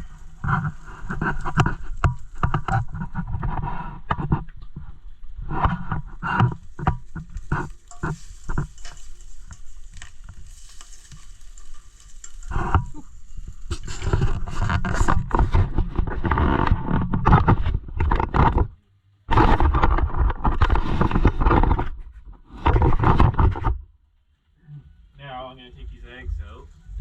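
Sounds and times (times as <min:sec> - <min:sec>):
eggs frying in a pan: 0:00.0 - 0:03.4, 0:05.4 - 0:15.4
utensil scraping a pan: 0:00.0 - 0:18.7, 0:19.3 - 0:23.8
rough rumbling noise: 0:00.0 - 0:27.0.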